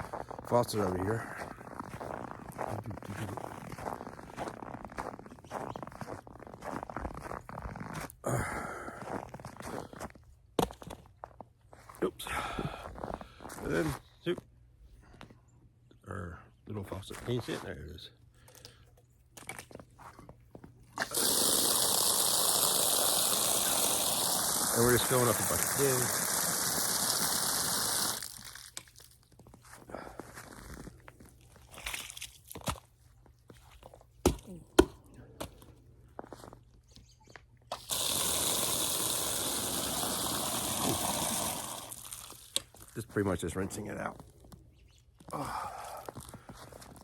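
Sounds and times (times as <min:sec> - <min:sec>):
water gushing into bucket: 0:21.0 - 0:28.7, 0:37.7 - 0:42.9.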